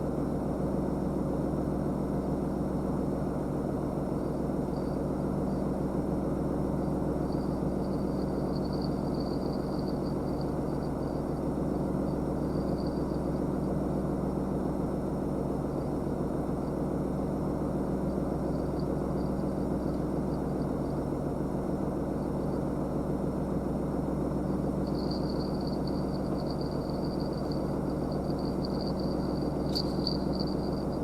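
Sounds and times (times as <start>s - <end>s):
low mechanical hum: 0.0s - 31.0s.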